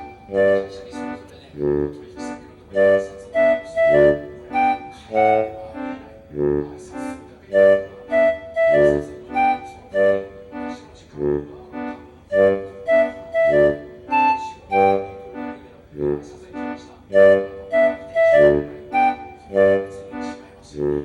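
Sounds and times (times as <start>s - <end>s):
bouncy keyboard melody: 0.0s - 21.0s
steady bass beat: 1.6s - 2.1s, 11.2s - 11.5s, 16.0s - 17.4s.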